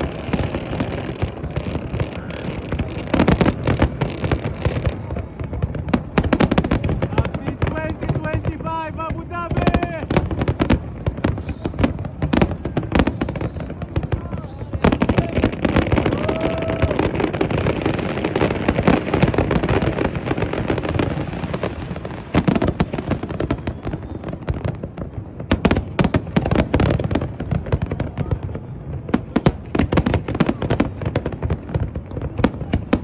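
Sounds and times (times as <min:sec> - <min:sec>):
fireworks banging and crackling: 0:00.0 - 0:33.0
firework whistles: 0:07.6 - 0:25.0.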